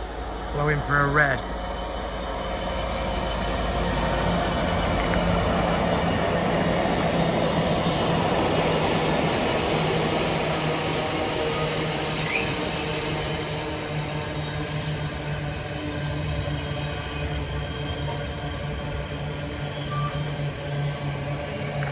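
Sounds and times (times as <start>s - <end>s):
locomotive engine tone: 0.0s - 21.9s
wagons rumbling on rails: 0.0s - 21.9s
rising squeak: 11.5s - 15.3s.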